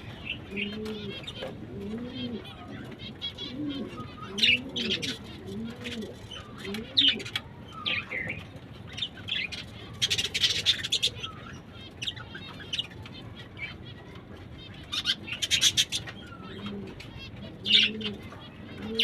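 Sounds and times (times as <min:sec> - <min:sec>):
small parrots chirping and chattering: 0:00.0 - 0:19.0
low cooing call: 0:03.4 - 0:08.2.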